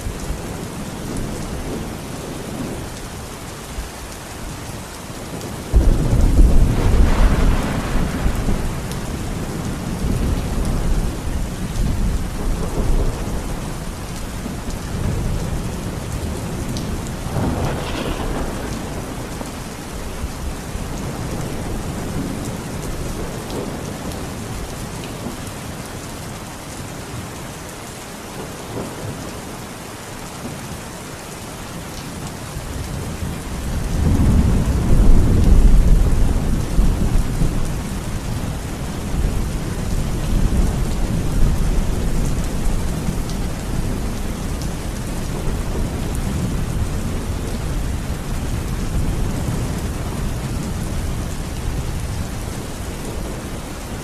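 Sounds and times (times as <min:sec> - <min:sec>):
steady rain: 0:00.0 - 0:54.0
thunder rumbling: 0:05.4 - 0:24.5.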